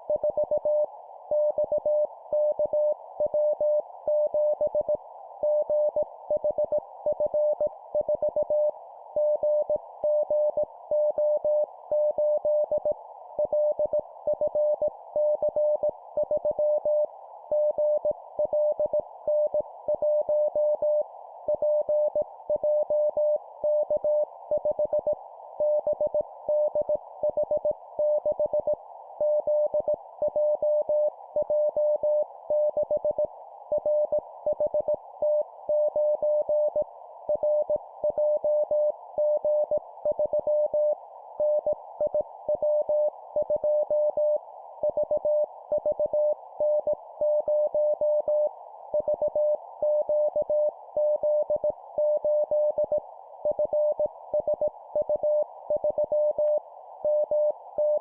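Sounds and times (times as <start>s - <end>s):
morse code beeps: 53.5s - 58.0s.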